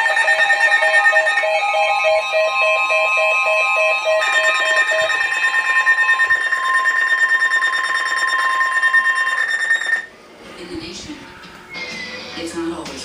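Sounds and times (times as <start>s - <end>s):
steady high alert tone: 0.0s - 10.2s.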